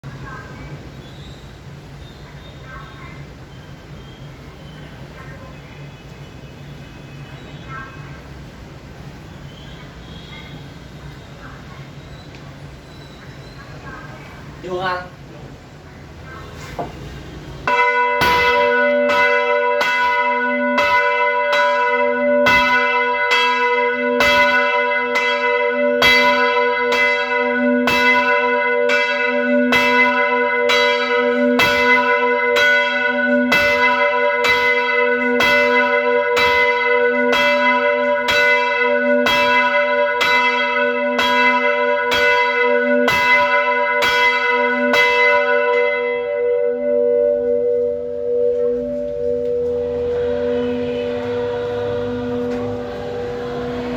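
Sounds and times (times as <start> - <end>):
church bells ringing: 15.9 - 53.9.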